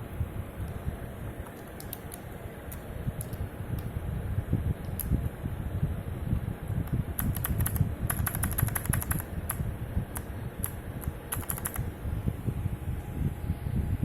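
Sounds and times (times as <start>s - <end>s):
steady low rumble: 0.0s - 14.0s
mechanical keyboard key clicks: 1.4s - 3.9s, 7.2s - 9.6s, 10.2s - 11.9s.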